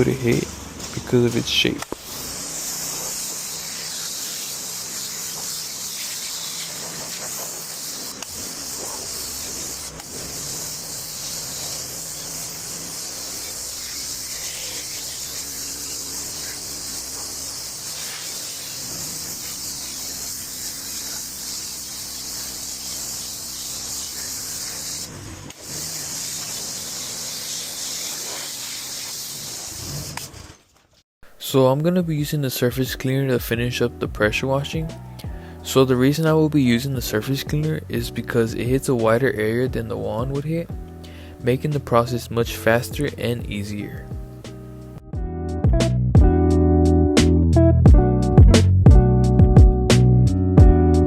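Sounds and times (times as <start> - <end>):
pressure washer blasting concrete: 1.9 - 30.3.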